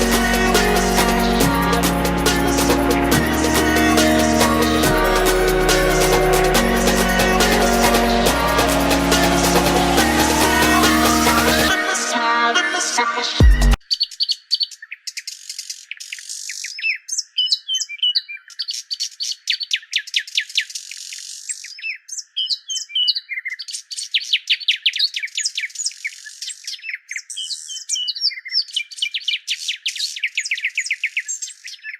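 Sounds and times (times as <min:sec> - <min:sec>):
small bird chirping: 0:13.8 - 0:31.9.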